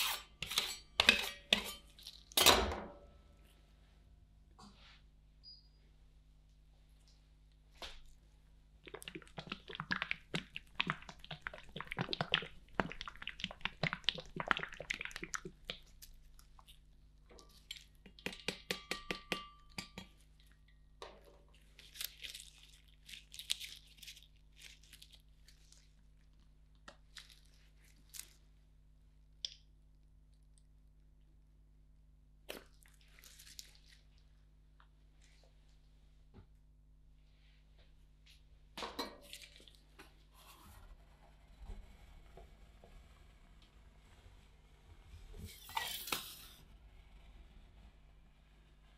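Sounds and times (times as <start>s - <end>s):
metal spatulas scraping ice cream: 0.0s - 2.0s, 45.4s - 46.6s
spatula taps on pan: 18.2s - 20.1s.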